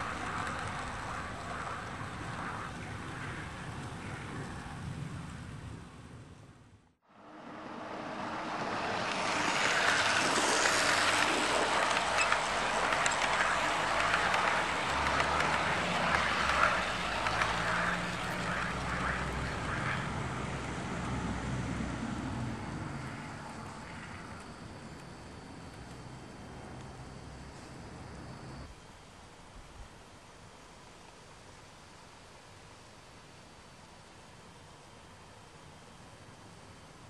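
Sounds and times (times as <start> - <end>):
model train wheels clicking: 0.0 - 2.6, 8.8 - 21.2
locomotive motor hum: 7.4 - 28.6.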